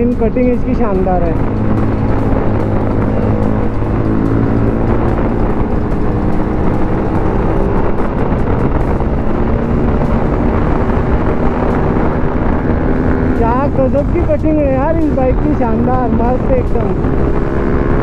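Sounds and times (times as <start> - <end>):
motorcycle engine running: 0.0 - 18.0
wind rushing past microphone: 0.0 - 18.0.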